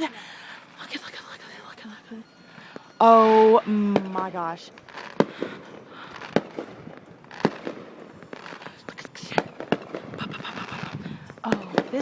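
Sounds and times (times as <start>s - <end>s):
fireworks banging: 2.6s - 12.0s.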